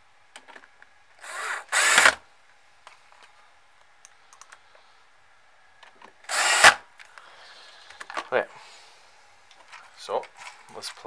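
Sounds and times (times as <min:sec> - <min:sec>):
electric screwdriver running: 0:01.2 - 0:02.2, 0:06.3 - 0:06.8
faint handling clicks: 0:02.9 - 0:04.7.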